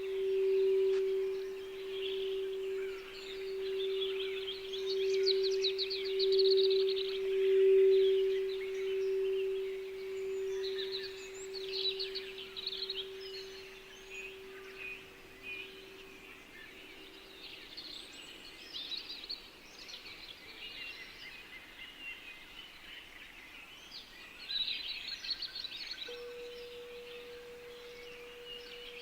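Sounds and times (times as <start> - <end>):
higher steady tone: 0.0 - 17.3, 26.1 - 29.0
steady low tone: 0.0 - 18.7, 26.1 - 29.0
songbirds chirping: 0.0 - 29.0.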